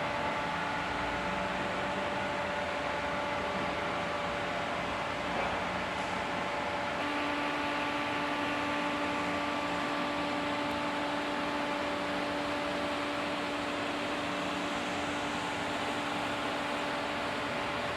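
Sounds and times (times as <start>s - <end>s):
steady hum tones: 7.0s - 17.9s.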